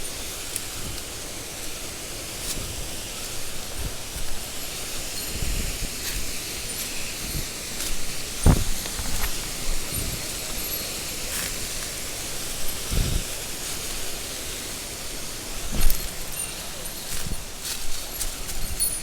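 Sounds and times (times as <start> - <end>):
stream water over rocks: 5.9 - 17.8
short low thuds: 8.4 - 10.3.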